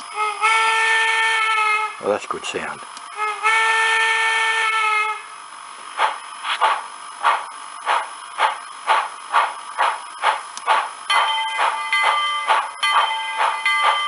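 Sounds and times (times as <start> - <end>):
steam locomotive whistle: 0.2 - 2.0, 3.2 - 5.2
steam chuffs: 6.0 - 14.0.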